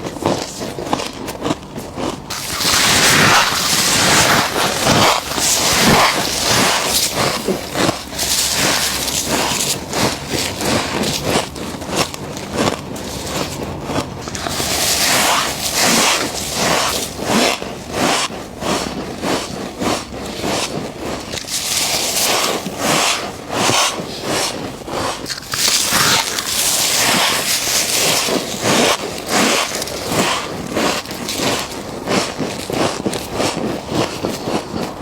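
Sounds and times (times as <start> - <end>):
frost being chewed: 0.0 - 35.0.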